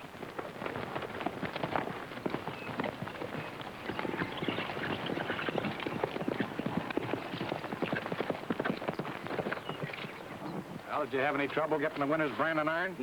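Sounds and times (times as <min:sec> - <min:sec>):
horse hoofbeats clattering: 0:00.0 - 0:12.9.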